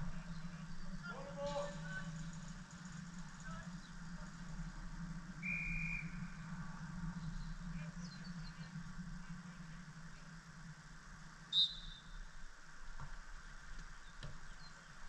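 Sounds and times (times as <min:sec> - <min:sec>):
steady low hum: 0:00.0 - 0:15.0
referee's whistle blast: 0:05.4 - 0:06.1, 0:11.5 - 0:12.0.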